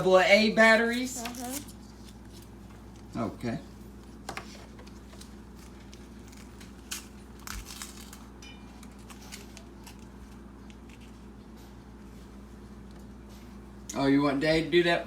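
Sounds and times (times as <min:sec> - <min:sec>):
steady low hum: 0:00.0 - 0:15.0
packaging crinkling and clicking: 0:05.2 - 0:11.1.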